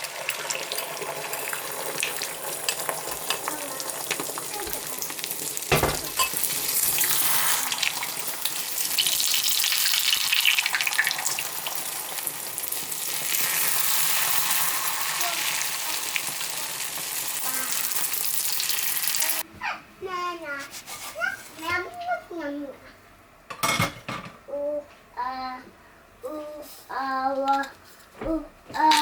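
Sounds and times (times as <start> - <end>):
vegetables sizzling in hot oil: 0.0 - 19.4.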